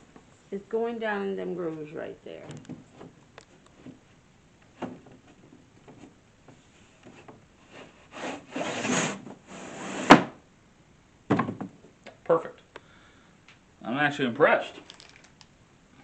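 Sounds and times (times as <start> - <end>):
wooden panel scraping in grooves: 7.0 - 10.3.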